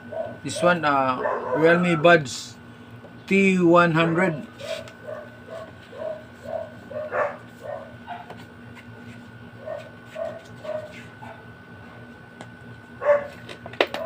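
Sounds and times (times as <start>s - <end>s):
steady hum: 0.0s - 14.0s
dog barking: 0.1s - 1.7s, 4.1s - 8.3s, 9.6s - 11.4s, 13.0s - 13.4s.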